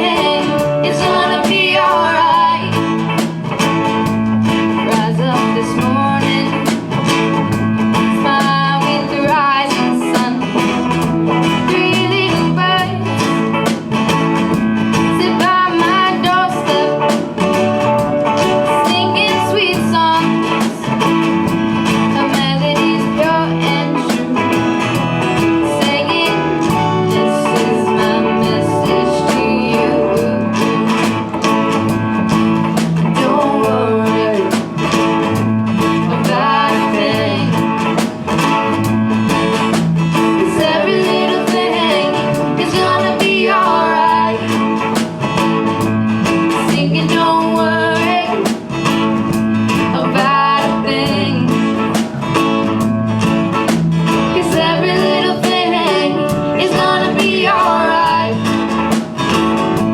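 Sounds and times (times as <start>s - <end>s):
person singing: 0.0s - 3.3s, 4.7s - 6.9s, 8.0s - 13.7s, 15.0s - 20.9s, 22.0s - 32.0s, 32.8s - 38.1s, 40.1s - 44.9s, 46.5s - 48.6s, 49.8s - 52.0s, 54.1s - 58.8s
guitar accompaniment: 0.0s - 59.9s.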